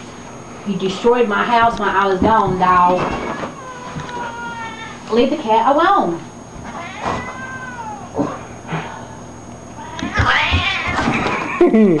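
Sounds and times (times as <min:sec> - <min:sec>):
cat yowling: 0:06.7 - 0:08.2, 0:09.8 - 0:11.1.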